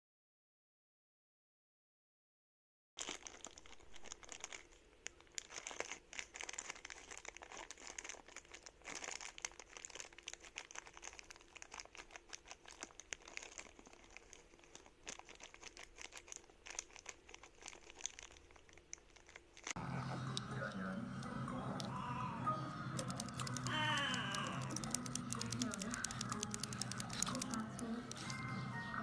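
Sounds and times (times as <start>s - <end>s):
crinkling and rustling: 3.0s - 20.9s, 23.0s - 28.7s
small irregular clicks: 23.0s - 28.4s.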